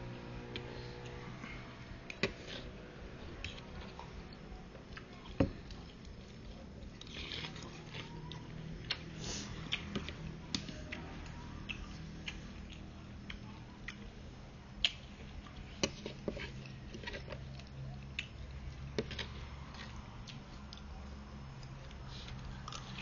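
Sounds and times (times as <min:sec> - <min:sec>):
steady low hum: 0:00.0 - 0:23.0
person chewing: 0:03.4 - 0:14.1, 0:21.6 - 0:23.0.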